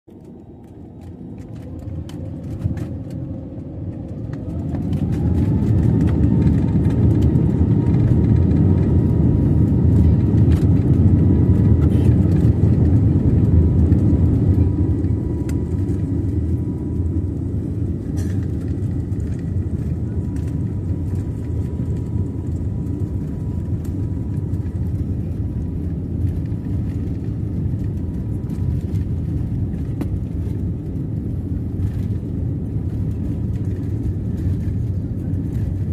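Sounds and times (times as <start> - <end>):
jet engines whining: 0.1 - 35.9
rumble of take-off roll: 0.1 - 35.9.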